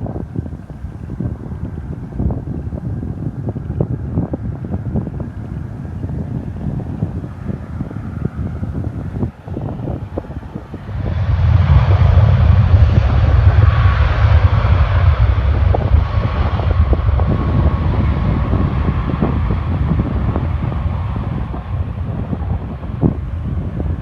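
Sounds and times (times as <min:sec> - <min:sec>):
jet engines passing: 0:00.0 - 0:24.0
wind buffeting microphone: 0:00.0 - 0:24.0.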